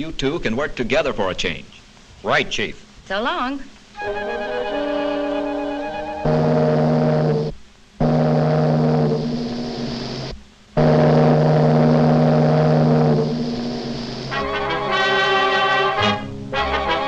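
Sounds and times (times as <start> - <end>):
steamship whistle blasts: 4.0 - 9.4, 10.8 - 13.3, 14.3 - 17.0.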